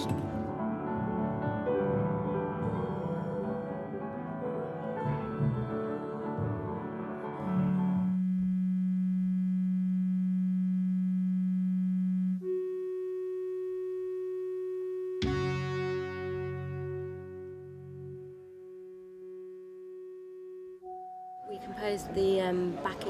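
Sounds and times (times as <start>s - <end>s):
piano-led instrumental music: 0.0s - 8.1s, 15.2s - 18.7s
held electronic sine tone: 7.5s - 21.9s.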